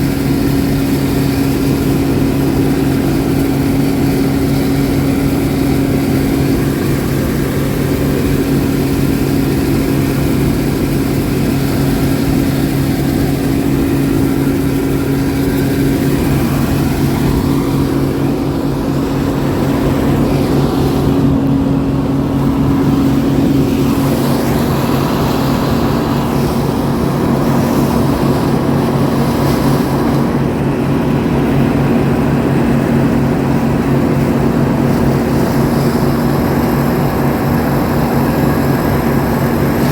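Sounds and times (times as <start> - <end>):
farm machinery engine running: 0.0 - 39.9.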